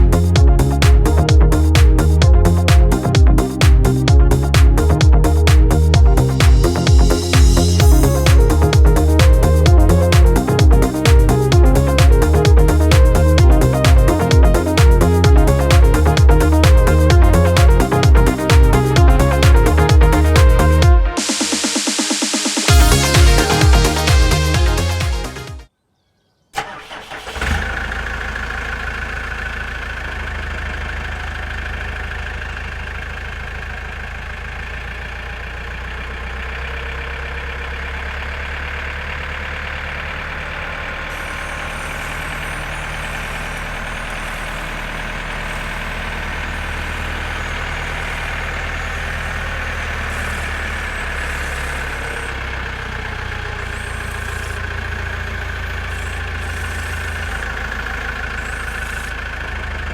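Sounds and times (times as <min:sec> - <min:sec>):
diesel engine running: 0:00.0 - 0:25.6, 0:26.6 - 0:59.9.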